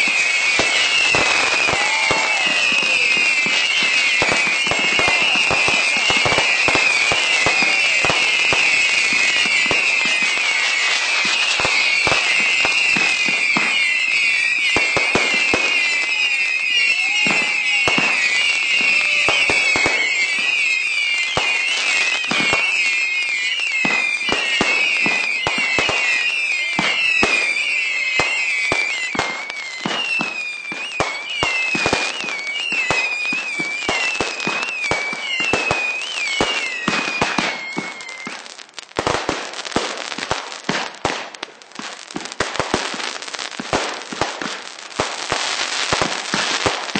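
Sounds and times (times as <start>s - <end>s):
high wavering firework whistles: 0.0s - 41.2s, 41.8s - 46.9s
fireworks bangs and crackles: 0.0s - 46.9s.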